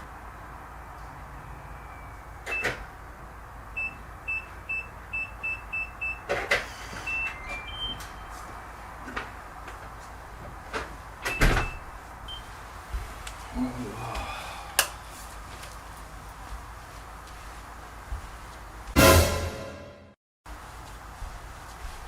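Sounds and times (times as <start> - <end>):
keypad beeps: 7.1 - 8.2.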